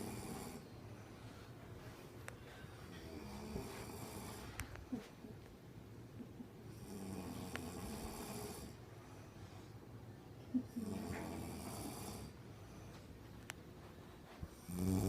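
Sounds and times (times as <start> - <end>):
woman snoring: 0.0 - 0.6, 3.1 - 4.6, 6.7 - 8.8, 10.6 - 12.4, 14.6 - 15.0.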